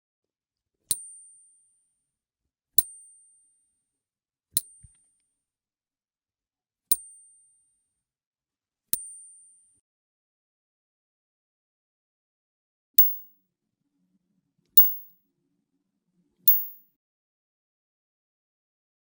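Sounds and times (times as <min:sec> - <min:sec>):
coin clinking with high ring: 0:13.0 - 0:13.3, 0:14.8 - 0:15.1, 0:16.5 - 0:16.8.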